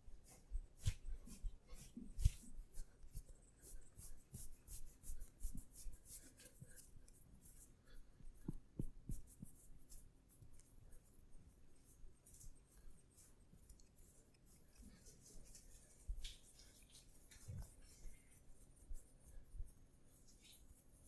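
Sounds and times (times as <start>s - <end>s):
hands rubbing skin and hair: 0.0s - 21.0s
soft patting thuds: 8.1s - 10.0s.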